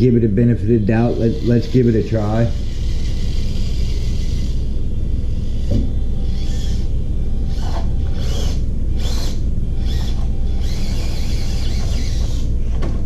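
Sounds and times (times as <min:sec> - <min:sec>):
electric motor whirring: 0:00.0 - 0:13.0.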